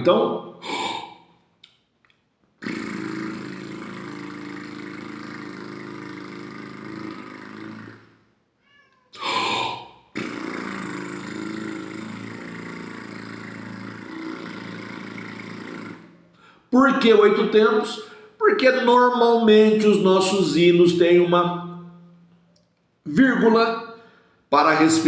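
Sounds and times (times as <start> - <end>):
lip trills: 0.0 - 1.8, 2.6 - 8.3, 9.2 - 18.3
quick breath in: 0.6 - 1.4.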